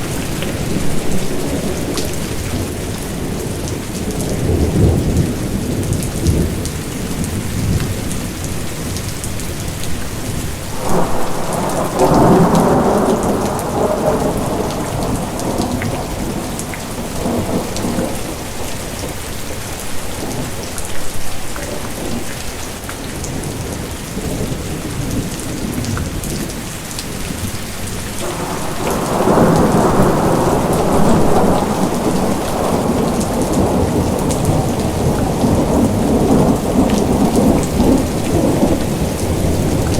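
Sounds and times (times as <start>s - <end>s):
heavy rain: 0.0s - 39.9s
rolling thunder: 10.2s - 22.5s, 28.2s - 39.9s.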